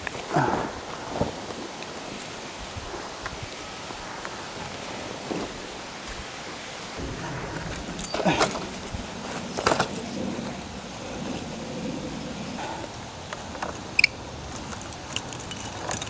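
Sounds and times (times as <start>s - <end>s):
faint hiss: 0.0s - 16.0s
jingling clinking clatter: 7.6s - 12.6s, 14.0s - 16.0s.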